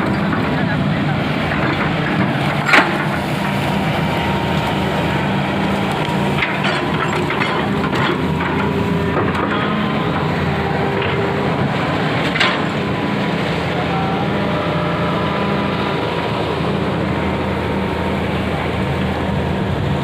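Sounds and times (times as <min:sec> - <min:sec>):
excavator diesel engine running: 0:00.0 - 0:20.0
metal clanks and knocks: 0:01.5 - 0:03.6, 0:06.3 - 0:11.5, 0:12.2 - 0:13.0.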